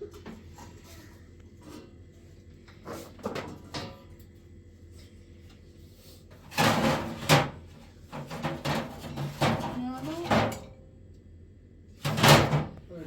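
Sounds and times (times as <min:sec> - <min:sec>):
clattering and banging: 0:06.5 - 0:10.8, 0:12.0 - 0:12.8.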